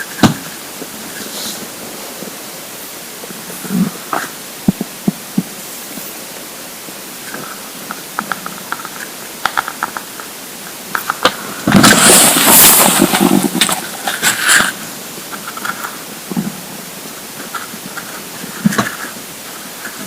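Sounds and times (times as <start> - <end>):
stomach rumbling growl: 3.2 - 6.1, 10.9 - 20.0.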